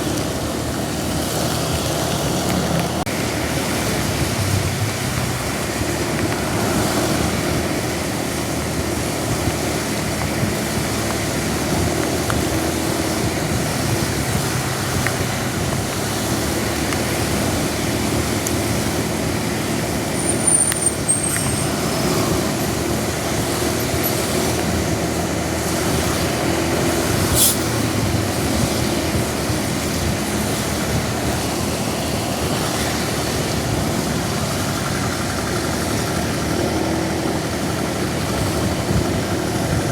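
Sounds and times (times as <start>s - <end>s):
rain hiss on wet road: 0.0s - 39.9s
vehicle engines running: 0.0s - 39.9s
high squeak: 20.2s - 21.8s.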